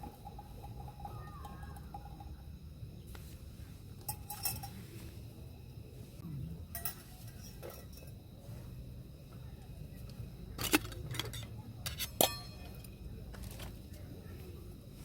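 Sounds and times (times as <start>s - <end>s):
kitchenware clinking: 0.0s - 2.4s, 4.0s - 4.8s, 6.7s - 8.2s, 10.6s - 12.9s.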